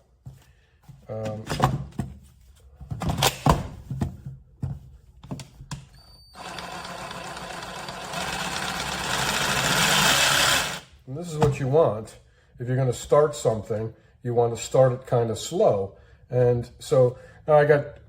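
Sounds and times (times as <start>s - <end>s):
jigsaw motor running: 6.4s - 10.9s.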